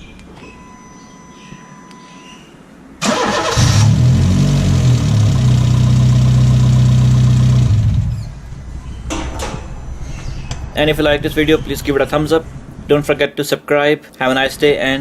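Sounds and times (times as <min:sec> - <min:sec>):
car engine starting and idling: 0:03.0 - 0:13.1.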